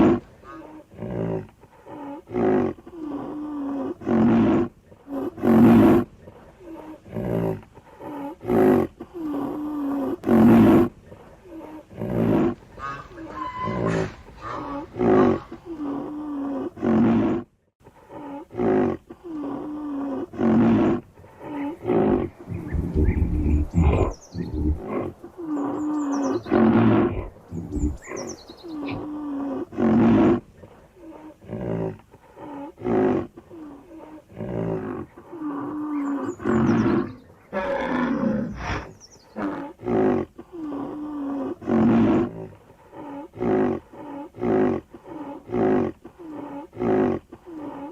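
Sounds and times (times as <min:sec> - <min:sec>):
rhinoceros deep calls: 0:18.0 - 0:47.9.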